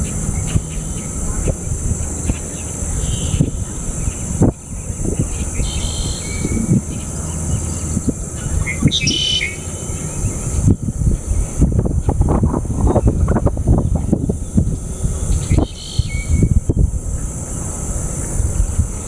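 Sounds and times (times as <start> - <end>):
high insect drone: 0.0 - 19.0
ducklings peeping: 5.2 - 10.6.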